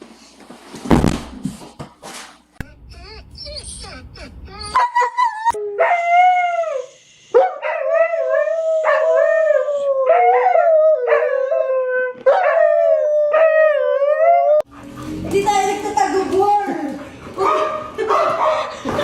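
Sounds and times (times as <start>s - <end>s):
dog howling: 3.0s - 6.9s, 7.7s - 19.0s.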